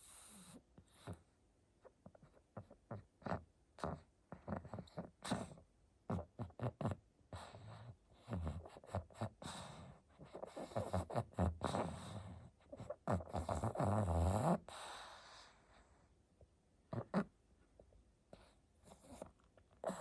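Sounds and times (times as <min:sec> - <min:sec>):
dog snoring and snorting: 0:00.0 - 0:01.3, 0:02.0 - 0:15.9, 0:16.9 - 0:17.4, 0:18.3 - 0:20.0.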